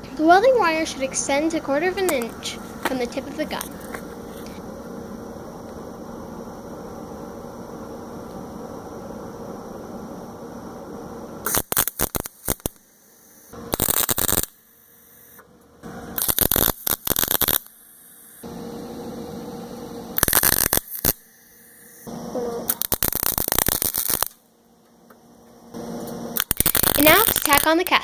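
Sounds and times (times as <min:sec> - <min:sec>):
welder hum: 0:00.0 - 0:28.0
welding arc crackle: 0:11.4 - 0:18.4, 0:20.1 - 0:24.5, 0:25.7 - 0:28.0.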